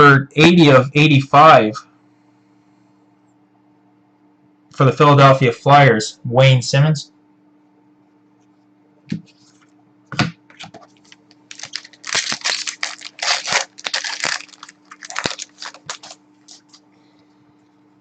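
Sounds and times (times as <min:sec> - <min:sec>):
cards and plastic sleeves rustling: 0:10.6 - 0:16.9.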